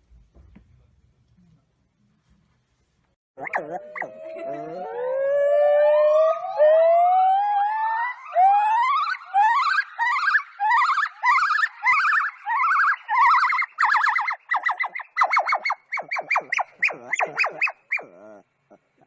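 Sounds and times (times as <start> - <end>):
siren-like wail: 3.4 - 14.2.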